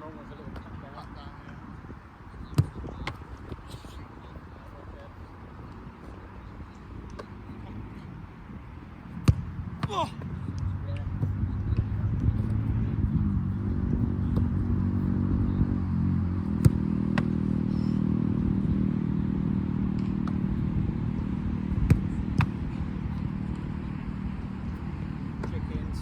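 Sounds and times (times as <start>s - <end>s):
sharp ball impacts: 9.2s - 10.3s, 16.5s - 17.5s, 19.9s - 20.6s, 21.8s - 22.7s.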